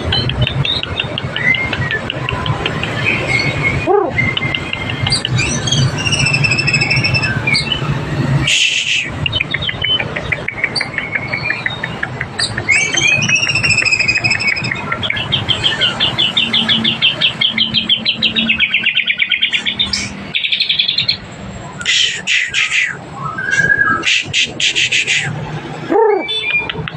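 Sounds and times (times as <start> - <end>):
bird singing whistled phrases: 3.1 - 7.8, 12.5 - 21.2, 21.8 - 24.3.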